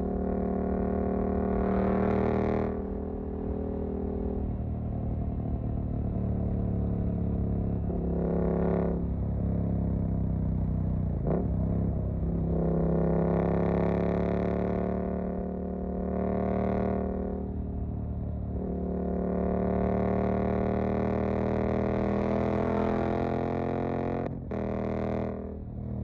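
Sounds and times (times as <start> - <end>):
motorcycle engine revving: 10.9 - 17.9.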